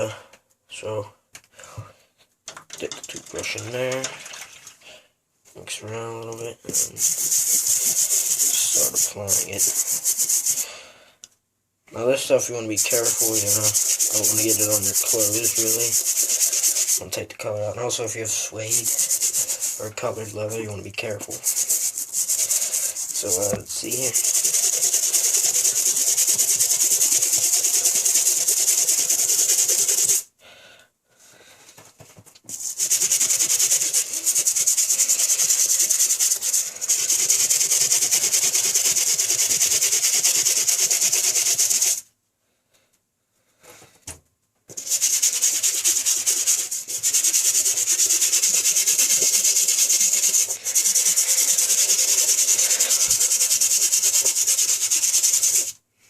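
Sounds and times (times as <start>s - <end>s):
toothbrush scrubbing rubber sole: 6.6s - 10.7s, 12.4s - 30.3s, 32.5s - 42.0s, 44.7s - 55.8s.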